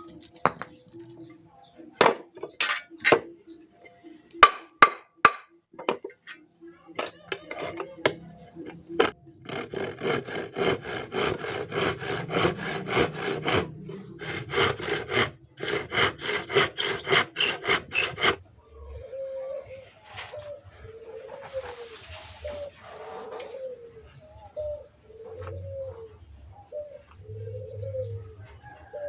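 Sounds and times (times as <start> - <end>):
hand saw cutting wood: 8.9 - 18.4.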